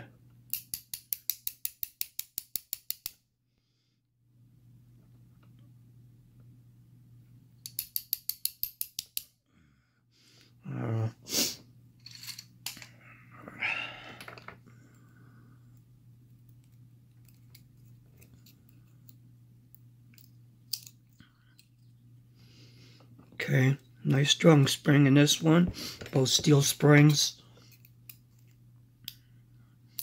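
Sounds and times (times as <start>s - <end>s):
small metallic clicks: 0.5s - 3.2s, 7.6s - 9.3s
steady low hum: 8.8s - 30.0s.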